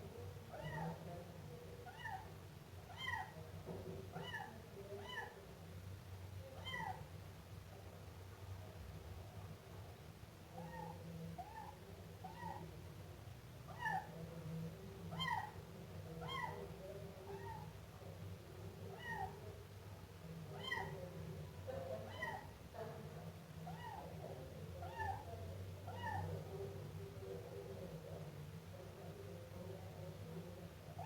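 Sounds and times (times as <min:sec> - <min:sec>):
kitten meowing: 0:16.2 - 0:16.6, 0:18.9 - 0:19.3.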